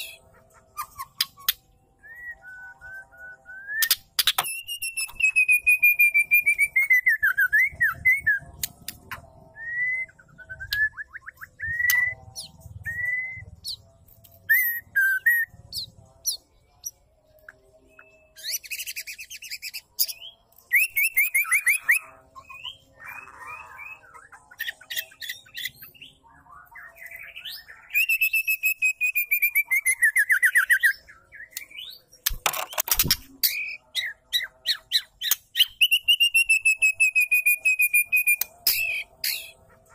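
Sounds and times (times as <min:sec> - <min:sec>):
bird singing whistled phrases: 0:00.8 - 0:08.4, 0:09.5 - 0:13.8, 0:14.5 - 0:15.5, 0:17.9 - 0:26.2, 0:26.8 - 0:32.0, 0:33.4 - 0:39.6.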